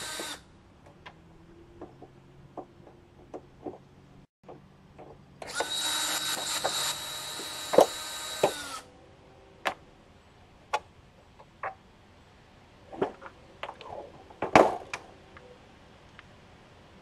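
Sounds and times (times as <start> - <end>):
power drill running: 0.0 - 0.4, 5.4 - 8.9.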